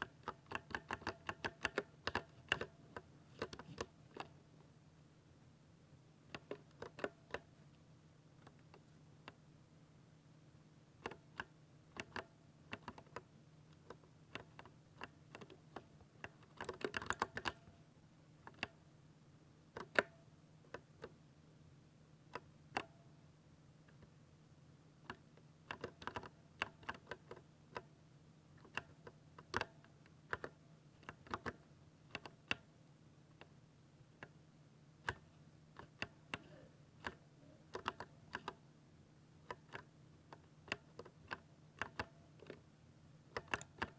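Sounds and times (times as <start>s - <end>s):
mechanical keyboard typing: 0.0s - 2.7s, 16.5s - 17.6s, 25.1s - 27.9s, 43.4s - 43.9s.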